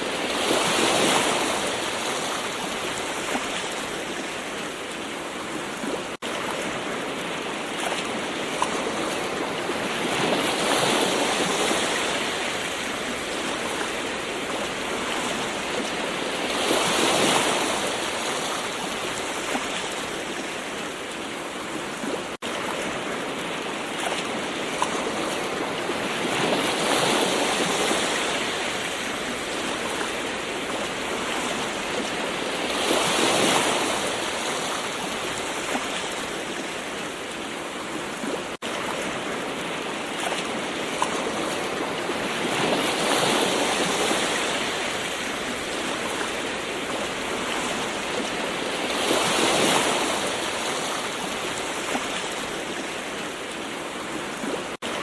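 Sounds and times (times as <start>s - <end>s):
ocean waves washing in: 0.0s - 55.0s.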